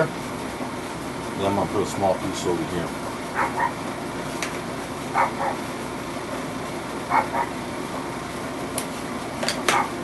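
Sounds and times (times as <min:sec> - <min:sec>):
steady background hum: 0:00.0 - 0:10.0
puppies yipping: 0:03.4 - 0:03.8, 0:05.2 - 0:05.6, 0:07.1 - 0:07.6.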